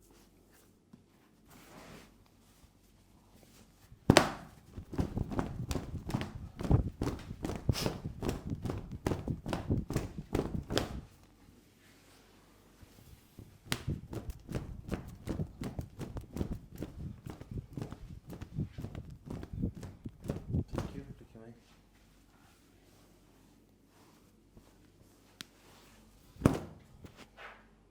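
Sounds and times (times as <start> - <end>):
hands slapping and tapping head: 4.1 - 11.2, 13.4 - 21.1.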